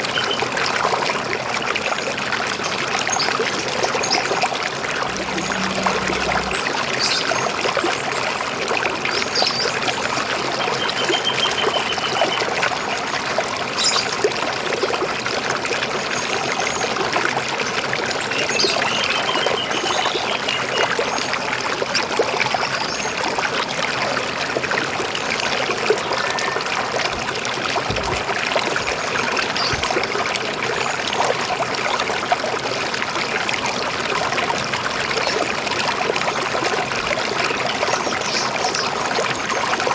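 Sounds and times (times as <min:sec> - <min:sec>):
river water rushing: 0:00.8 - 0:07.4.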